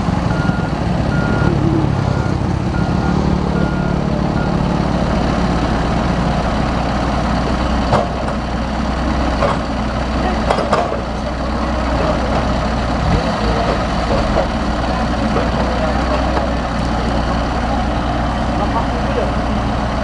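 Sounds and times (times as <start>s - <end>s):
backhoe engine running under load: 0.0s - 20.0s
reversing alarm beeping: 0.3s - 4.7s.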